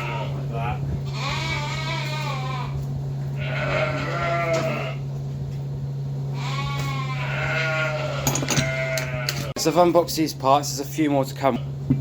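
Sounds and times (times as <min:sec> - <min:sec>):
sheep bleating: 0:00.0 - 0:05.1, 0:06.3 - 0:09.6
steady low hum: 0:00.0 - 0:12.0.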